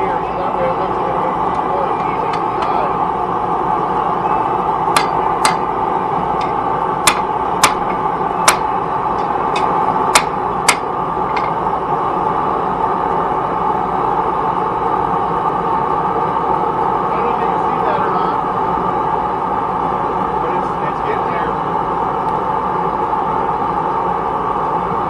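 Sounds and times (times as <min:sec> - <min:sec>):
steady rushing noise: 0:00.0 - 0:24.8
hammer striking steel on anvil: 0:04.9 - 0:05.7, 0:06.4 - 0:11.6.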